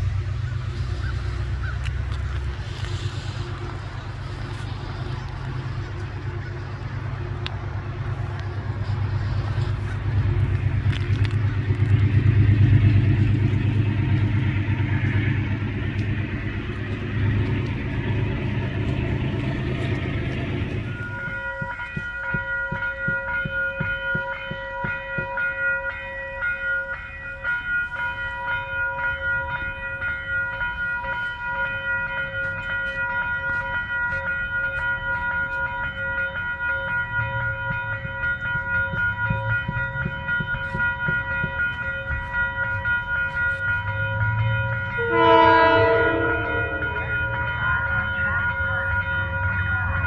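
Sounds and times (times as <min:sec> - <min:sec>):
train horn: 0:00.0 - 0:21.8, 0:40.0 - 0:50.0
crossing bell ringing: 0:00.0 - 0:50.0
low train rumble: 0:00.0 - 0:50.0.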